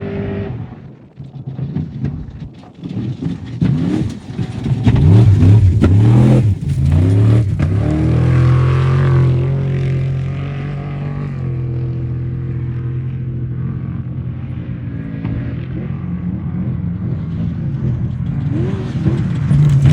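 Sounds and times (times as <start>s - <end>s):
truck engine revving hard: 3.7s - 12.5s, 18.3s - 19.9s.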